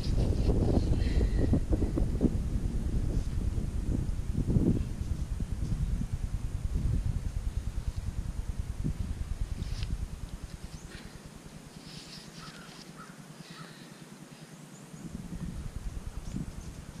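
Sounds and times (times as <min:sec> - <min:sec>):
wind rumble on microphone: 0:00.0 - 0:12.6, 0:14.9 - 0:17.0
crow cawing: 0:12.4 - 0:13.9.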